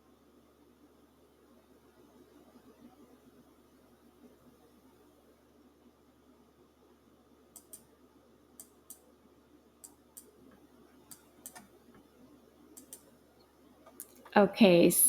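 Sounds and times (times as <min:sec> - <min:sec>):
faint sharp clicks in pairs: 0:07.5 - 0:07.9, 0:08.6 - 0:09.1, 0:09.8 - 0:10.4, 0:11.1 - 0:12.0, 0:12.8 - 0:13.1.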